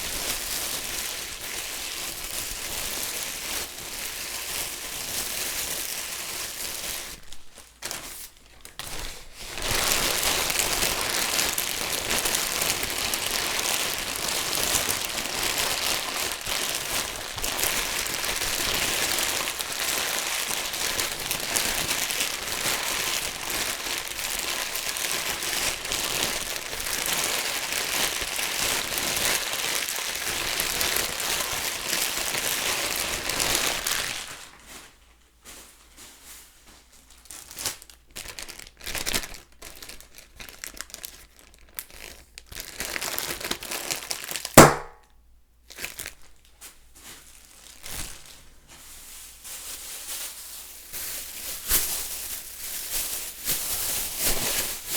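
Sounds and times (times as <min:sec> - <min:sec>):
plastic bag crumpling: 0:00.0 - 0:35.0, 0:36.8 - 0:45.0, 0:45.6 - 0:54.9
plastic bag bursting pop: 0:44.4 - 0:45.1.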